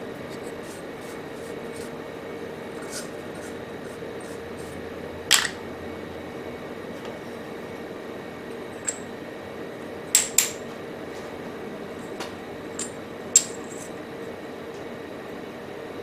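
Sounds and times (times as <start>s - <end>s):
steady machine hum: 0.0s - 16.0s
small metal parts clinking: 8.8s - 9.0s.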